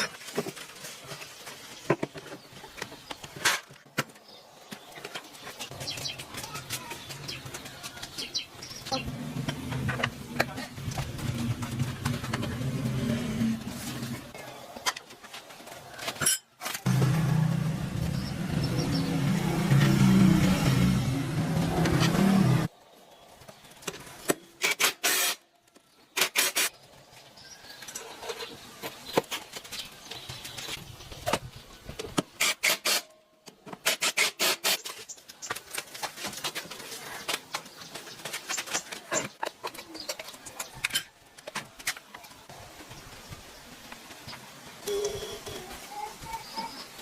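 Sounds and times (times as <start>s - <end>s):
motorcycle engine running: 16.9s - 22.7s.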